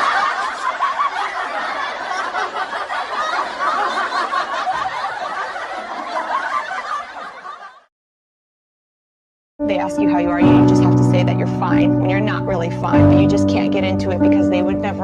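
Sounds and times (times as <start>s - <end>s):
crowd laughing: 0.0s - 7.9s.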